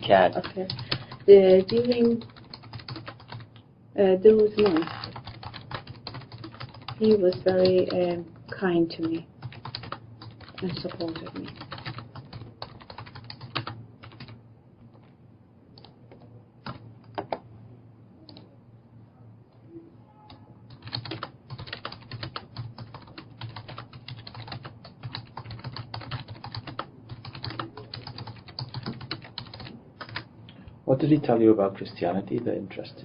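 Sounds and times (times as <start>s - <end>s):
low steady hum: 0.0s - 33.0s
typing on computer keyboard: 0.1s - 3.5s, 4.5s - 15.0s, 15.8s - 17.4s, 20.3s - 30.3s.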